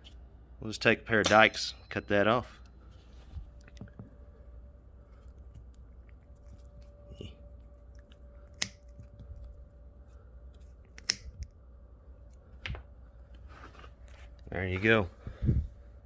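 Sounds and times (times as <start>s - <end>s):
diagonal cutters snipping: 10.9s - 11.5s.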